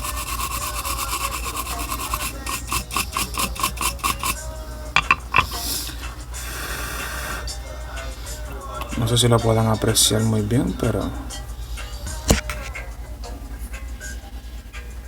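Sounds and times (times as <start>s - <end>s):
scrubbing circuit board: 0.0s - 5.7s
soft rubbing: 0.0s - 6.3s.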